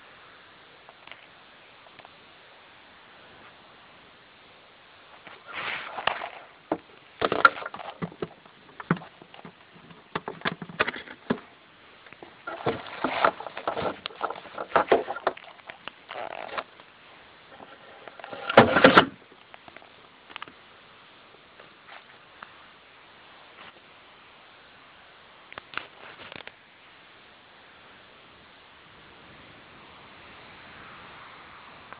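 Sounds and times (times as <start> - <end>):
scraping rustle: 5.1 - 11.5, 12.1 - 19.9, 25.7 - 26.5
plastic parts clicking and rustling: 5.9 - 11.5, 12.1 - 16.8.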